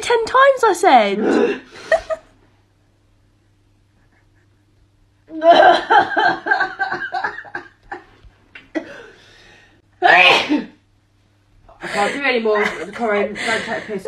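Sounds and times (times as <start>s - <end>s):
woman laughing: 5.3s - 8.2s, 11.8s - 14.0s.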